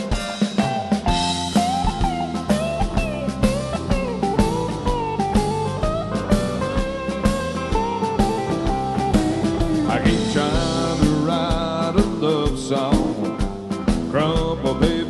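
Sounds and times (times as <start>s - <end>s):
drum kit beat: 0.0s - 15.0s
guitar melody with bending notes: 0.0s - 15.0s.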